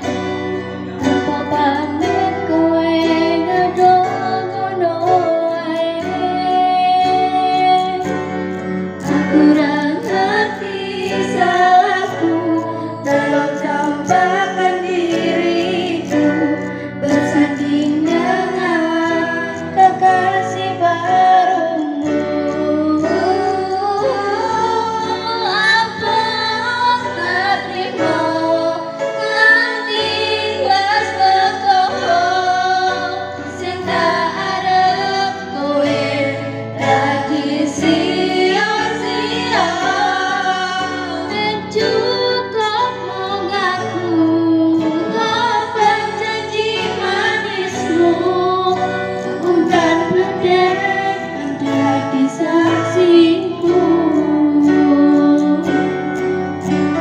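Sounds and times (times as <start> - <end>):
woman singing: 0.8 - 8.4, 9.0 - 56.3.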